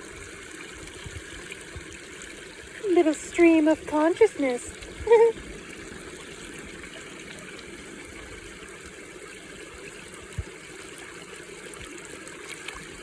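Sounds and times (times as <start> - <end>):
stream trickling: 0.0 - 13.0.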